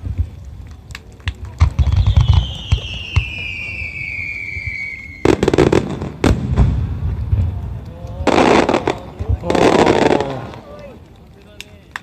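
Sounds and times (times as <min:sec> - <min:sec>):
crackling firework bangs: 0:00.0 - 0:11.6
firework bang: 0:01.6 - 0:07.7
firework whistle falling in pitch: 0:01.8 - 0:05.4.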